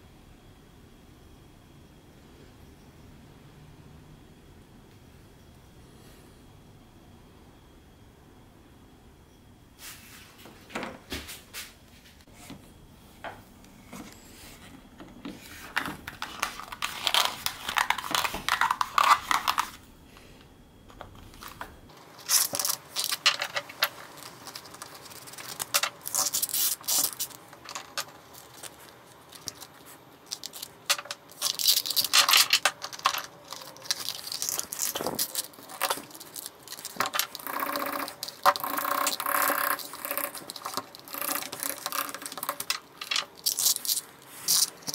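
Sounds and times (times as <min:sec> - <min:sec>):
hand tools clicking and clinking: 0:22.1 - 0:44.9.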